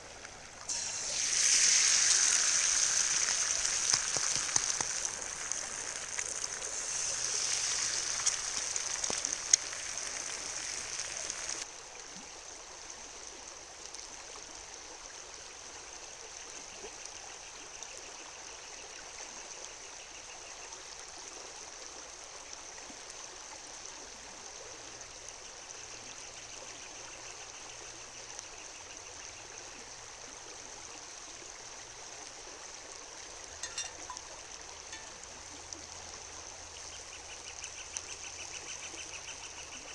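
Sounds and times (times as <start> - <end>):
river flowing: 0.0 - 11.7, 32.8 - 37.0.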